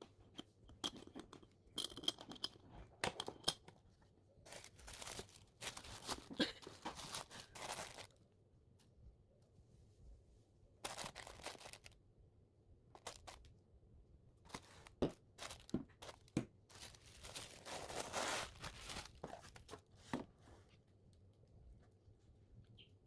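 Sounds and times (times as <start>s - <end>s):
rustling and crinkling: 0.0s - 8.2s, 10.8s - 12.0s, 13.0s - 13.5s, 14.4s - 22.1s.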